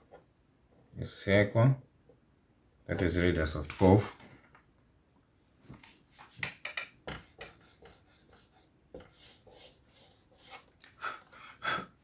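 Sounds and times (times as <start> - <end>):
pencil compass scratching on paper: 0.0 - 1.6, 7.1 - 10.7.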